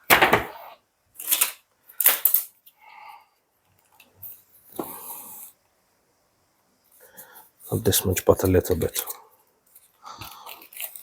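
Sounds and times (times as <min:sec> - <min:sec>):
objects clattering on hard surface: 0:00.0 - 0:00.7.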